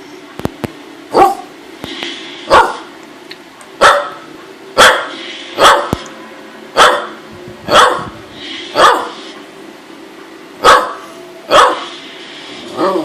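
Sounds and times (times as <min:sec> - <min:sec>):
dog barking: 0:01.1 - 0:01.5, 0:02.5 - 0:02.9, 0:03.8 - 0:06.0, 0:06.8 - 0:08.2, 0:08.8 - 0:09.2, 0:10.6 - 0:11.9.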